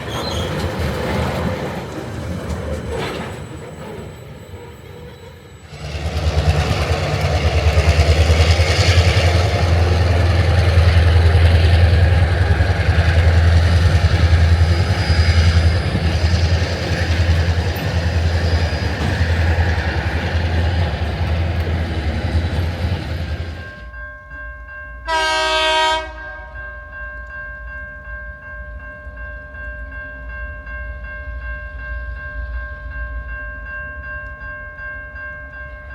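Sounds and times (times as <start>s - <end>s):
diesel locomotive engine throbbing: 0.0s - 24.0s
locomotive horn blast: 25.1s - 26.6s.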